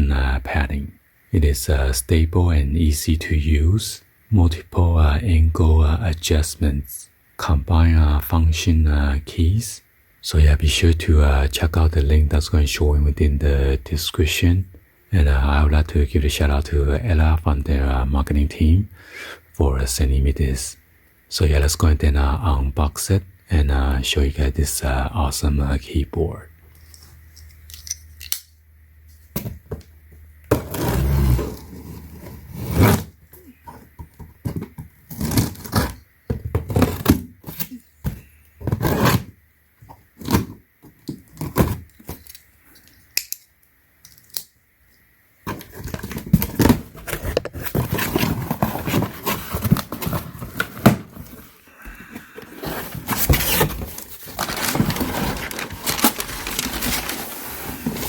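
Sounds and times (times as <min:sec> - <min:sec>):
cardboard box scraping and thunking: 0:30.5 - 0:33.1, 0:45.5 - 0:51.6, 0:52.5 - 0:58.0
packaging rustling and crackling: 0:52.6 - 0:58.0.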